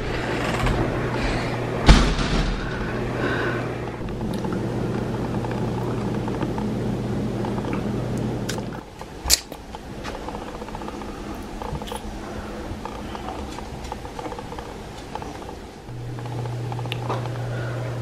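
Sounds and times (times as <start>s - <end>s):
mechanical hum: 0.0s - 18.0s
faint clicks and handling noise: 7.4s - 17.4s.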